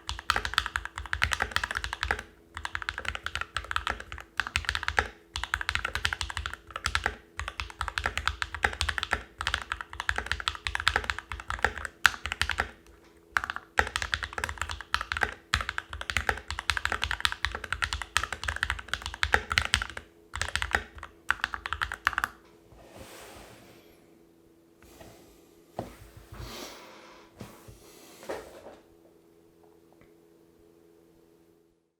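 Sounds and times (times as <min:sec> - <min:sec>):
mechanical keyboard typing: 0:00.0 - 0:22.4.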